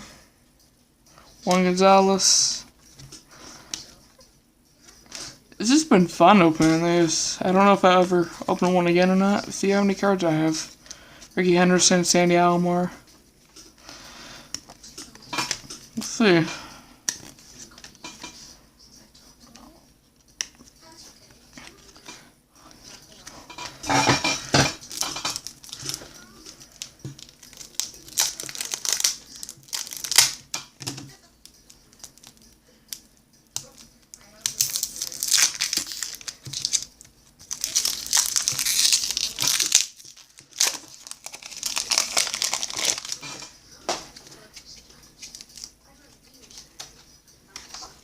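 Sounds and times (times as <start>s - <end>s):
plastic wrapper tearing and crinkling: 24.7s - 30.7s, 31.4s - 33.0s, 33.6s - 43.5s, 45.2s - 45.8s
cards rustling and clicking: 24.8s - 48.0s.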